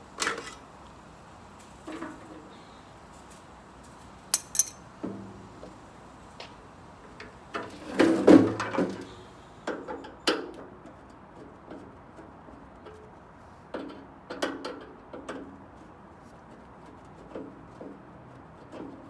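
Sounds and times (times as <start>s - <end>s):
metal parts and tools clinking: 4.3s - 4.8s.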